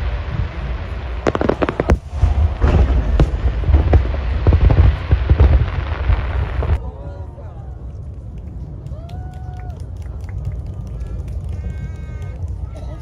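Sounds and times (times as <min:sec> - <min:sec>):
fireworks booming: 0:00.0 - 0:06.8
fireworks crackling: 0:00.0 - 0:06.8, 0:07.8 - 0:13.0
low rumble: 0:00.0 - 0:13.0.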